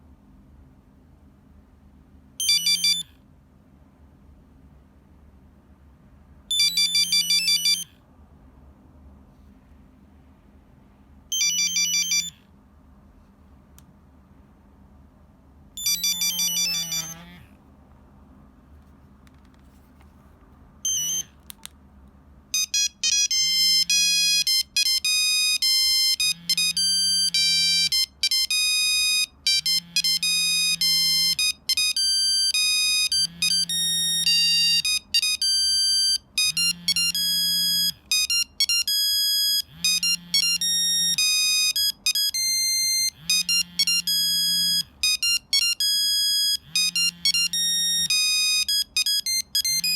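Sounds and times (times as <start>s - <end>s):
monophonic ringtone melody: 2.4s - 3.0s, 6.5s - 7.9s, 11.3s - 12.4s, 15.8s - 17.4s, 20.9s - 21.3s, 22.6s - 49.9s.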